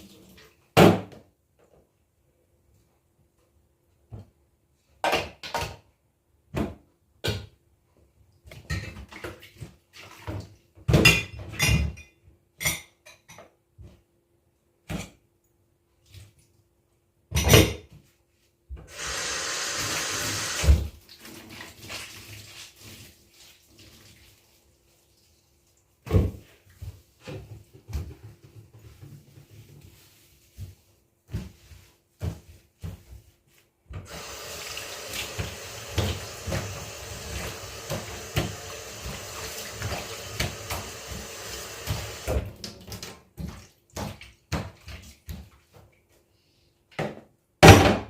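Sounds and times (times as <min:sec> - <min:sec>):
dishes clinking and clattering: 0:10.9 - 0:13.5
water tap running: 0:18.9 - 0:21.0, 0:34.0 - 0:42.6.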